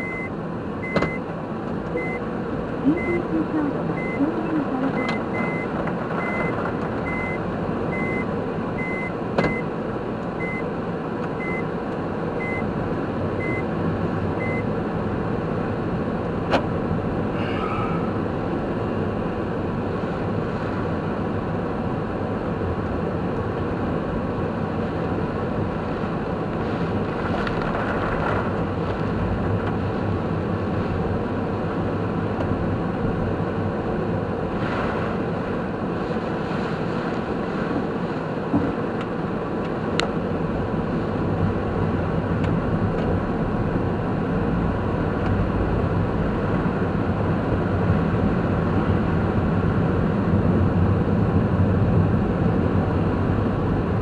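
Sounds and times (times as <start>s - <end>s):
short high in-car beeps: 0.0s - 1.3s, 2.0s - 2.3s, 2.9s - 9.7s, 10.4s - 10.7s, 11.4s - 11.7s, 12.4s - 12.7s, 13.4s - 13.7s, 14.4s - 14.7s
car road and engine noise: 0.0s - 54.0s.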